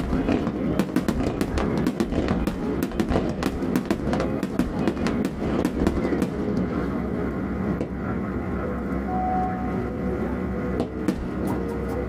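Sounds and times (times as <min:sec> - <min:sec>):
fireworks crackling: 0:00.0 - 0:06.9
steady low rumble: 0:00.0 - 0:12.0.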